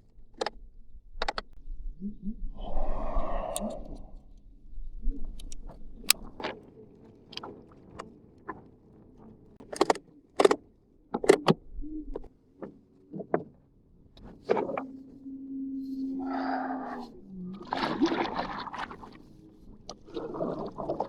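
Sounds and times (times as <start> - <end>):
knocks and clunks on boat: 9.6 - 14.9.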